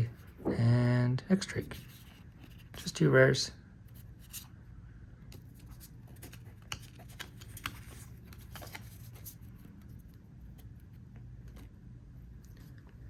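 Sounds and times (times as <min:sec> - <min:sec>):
trading cards clicking and rustling: 0:05.3 - 0:11.7.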